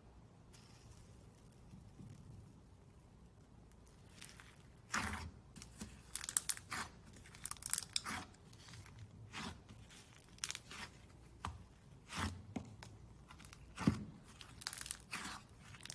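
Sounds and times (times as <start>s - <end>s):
slime crackling and popping: 3.4s - 11.3s, 12.0s - 15.9s.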